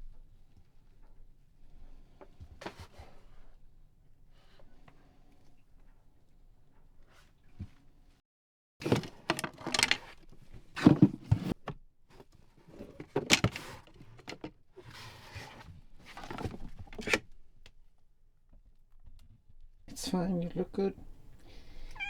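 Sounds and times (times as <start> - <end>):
rustling and clinking handling noises: 8.8 - 14.6, 16.0 - 17.3.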